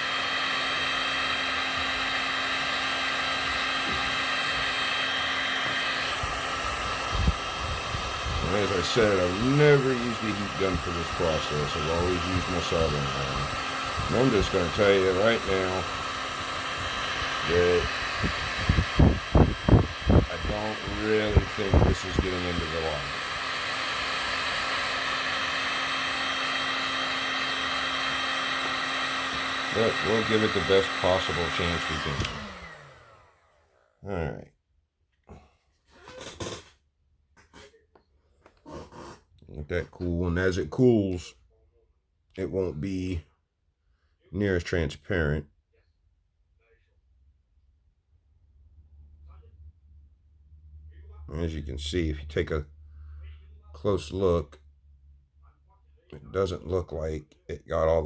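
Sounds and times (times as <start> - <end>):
heat gun fan whine and air rush: 0.0 - 33.7.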